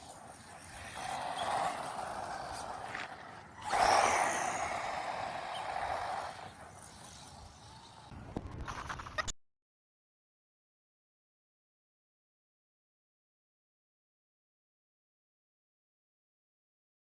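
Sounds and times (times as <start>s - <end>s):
toy truck electric motor: 0.0s - 8.1s.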